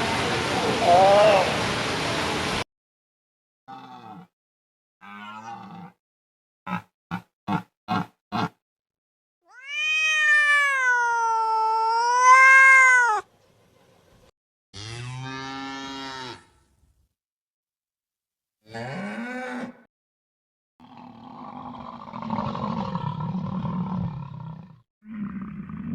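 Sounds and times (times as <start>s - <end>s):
short rising animal call: 9.5s - 13.2s.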